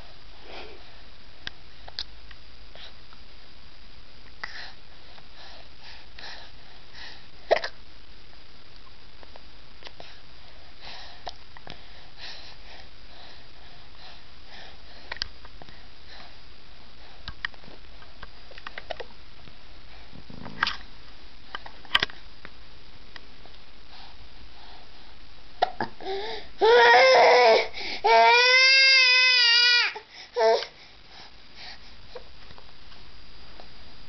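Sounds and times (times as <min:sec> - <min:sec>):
soft breathing: 0:00.0 - 0:02.0, 0:04.4 - 0:07.5, 0:09.8 - 0:18.9, 0:23.4 - 0:26.6, 0:27.6 - 0:28.1, 0:30.0 - 0:34.0.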